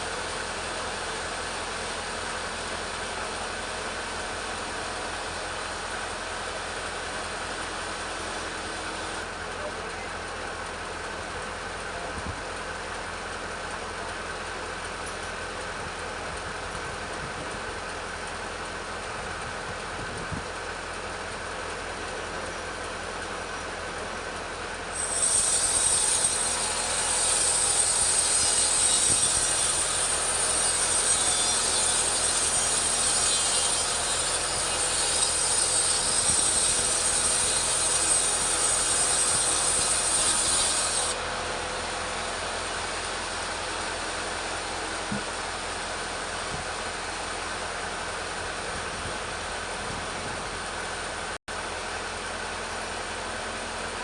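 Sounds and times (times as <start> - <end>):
chainsaw cutting log: 25.0 - 41.2.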